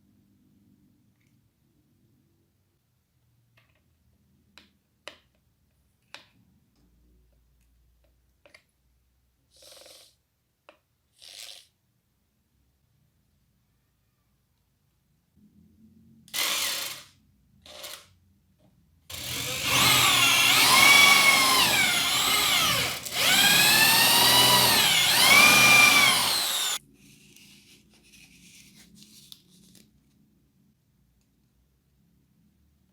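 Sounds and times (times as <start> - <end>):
electric drill whining: 16.4 - 17.0, 19.1 - 26.8.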